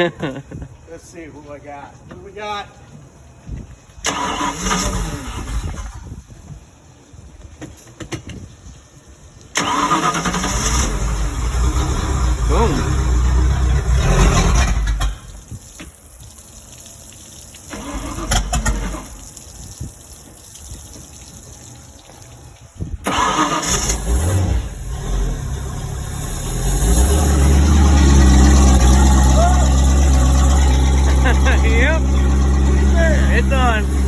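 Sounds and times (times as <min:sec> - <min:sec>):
boat engine cranking and starting: 0:04.0 - 0:06.2, 0:09.5 - 0:15.4, 0:17.7 - 0:19.4, 0:23.0 - 0:34.0.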